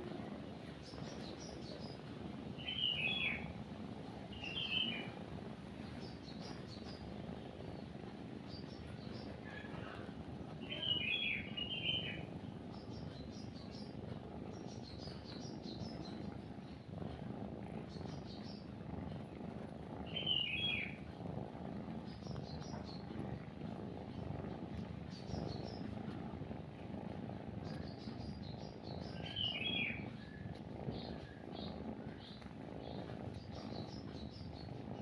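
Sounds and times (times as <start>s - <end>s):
birds chirping: 0.0s - 3.6s, 4.3s - 16.8s, 17.8s - 18.7s, 20.0s - 21.0s, 25.1s - 26.1s, 27.7s - 35.0s
cat purring: 0.0s - 35.0s.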